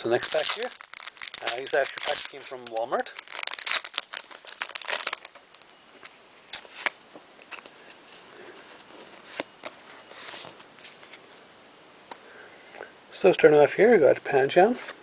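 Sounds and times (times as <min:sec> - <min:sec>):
foil wrapper crinkling: 0:00.0 - 0:07.8
cards clicking and rustling: 0:00.1 - 0:08.0.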